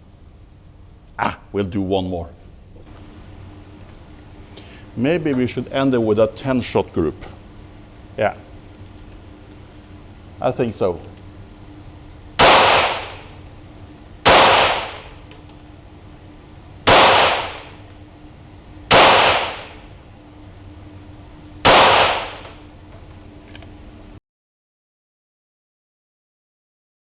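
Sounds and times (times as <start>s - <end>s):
pistol shots: 12.4s - 13.3s, 14.3s - 15.2s, 16.8s - 17.8s, 18.9s - 19.8s, 21.7s - 22.6s.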